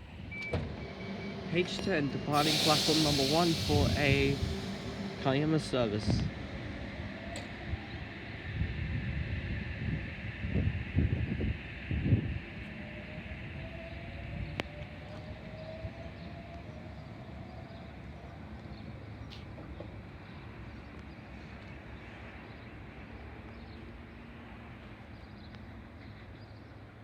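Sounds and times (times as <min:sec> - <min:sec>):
faint rising whine: 0:00.0 - 0:16.3
electric train rumble: 0:00.0 - 0:27.0.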